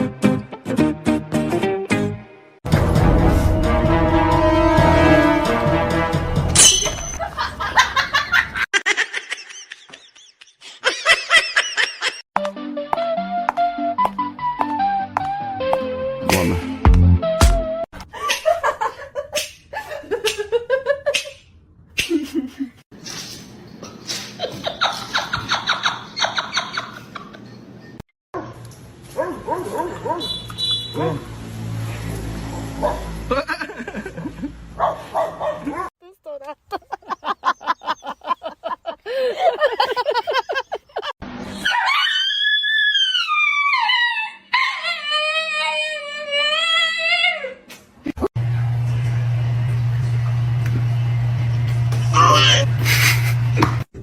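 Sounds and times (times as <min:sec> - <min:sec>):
person laughing: 0:07.2 - 0:12.2, 0:18.1 - 0:21.4, 0:22.0 - 0:22.8, 0:33.3 - 0:34.6, 0:36.4 - 0:41.2, 0:52.2 - 0:53.8
dog yipping: 0:29.2 - 0:30.3, 0:34.8 - 0:35.9, 0:41.6 - 0:47.4
dog howling: 0:41.7 - 0:47.6.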